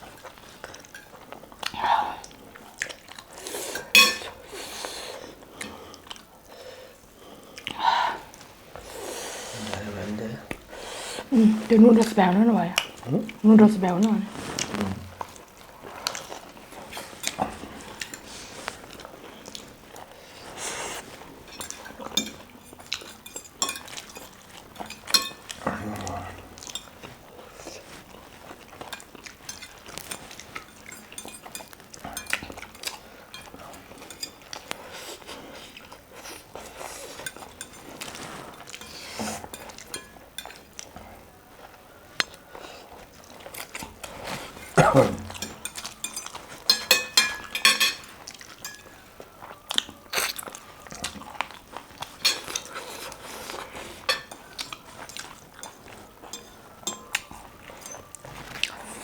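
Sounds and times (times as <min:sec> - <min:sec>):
cutlery and dishes clinking: 0:00.2 - 0:01.2, 0:03.6 - 0:04.5, 0:16.1 - 0:19.7, 0:20.8 - 0:27.2, 0:27.8 - 0:34.9, 0:36.6 - 0:41.0, 0:43.4 - 0:59.0
person chewing and crunching: 0:14.4 - 0:59.0.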